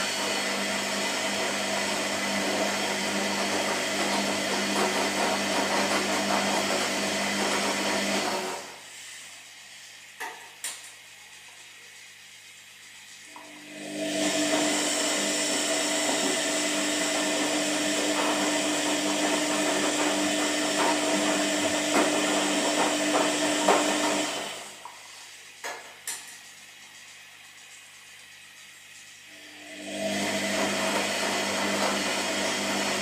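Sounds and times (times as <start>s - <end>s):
washing machine motor whining: 0.0s - 10.3s, 11.4s - 25.6s, 26.7s - 33.0s.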